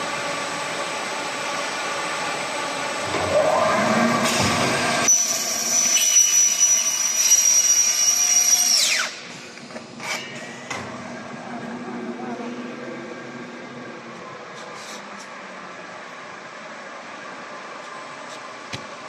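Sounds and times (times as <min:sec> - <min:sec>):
factory hum: 0:00.0 - 0:19.0.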